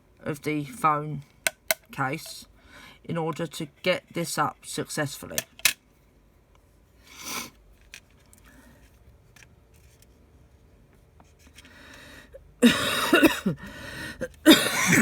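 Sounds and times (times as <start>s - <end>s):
person coughing loudly: 12.6s - 13.6s, 14.2s - 15.0s.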